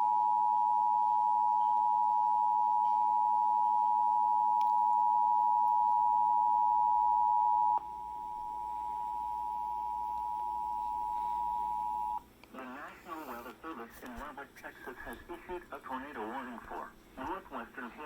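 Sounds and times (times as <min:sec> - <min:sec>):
two-tone alarm: 0:00.0 - 0:12.2.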